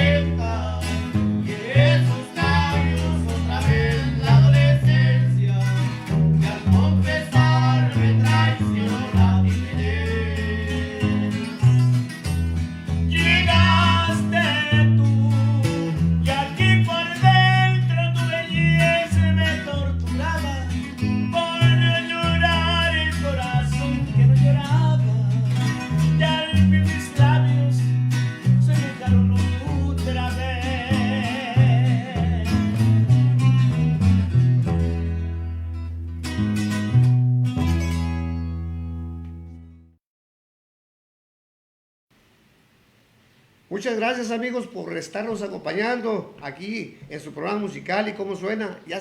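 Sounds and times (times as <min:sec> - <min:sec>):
person singing: 0:00.0 - 0:12.0, 0:13.1 - 0:27.9, 0:28.6 - 0:33.1
strummed guitar: 0:00.0 - 0:39.8
bass line: 0:00.0 - 0:40.0.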